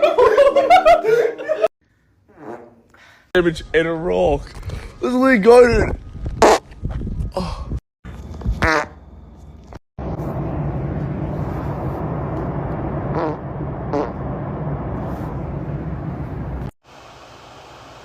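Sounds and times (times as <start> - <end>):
short wavering farts: 2.3 - 2.9, 6.4 - 6.6, 8.6 - 9.0, 13.1 - 14.2
low rumble and hum: 8.1 - 16.7.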